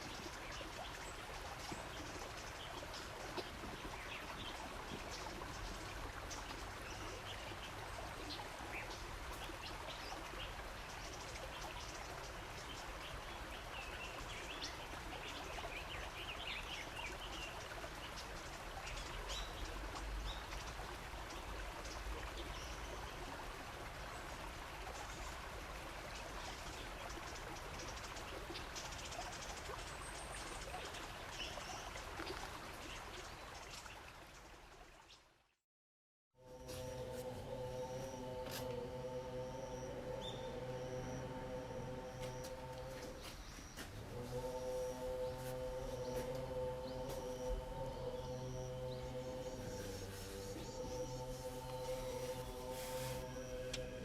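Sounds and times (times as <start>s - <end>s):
small birds chirping: 0.0s - 23.2s, 36.7s - 53.6s
running water: 0.0s - 35.5s, 36.4s - 54.0s.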